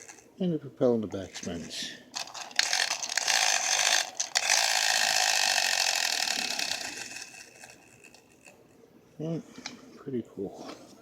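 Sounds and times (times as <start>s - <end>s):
clockwork toy motor whirring: 0.0s - 0.3s, 1.2s - 8.6s.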